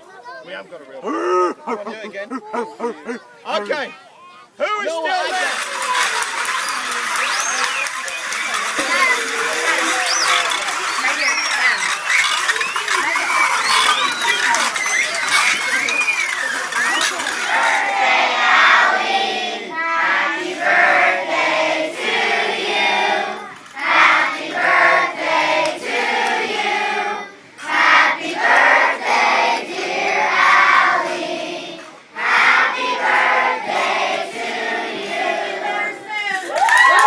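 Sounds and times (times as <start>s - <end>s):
children singing together: 1.7s - 3.2s, 12.5s - 36.0s.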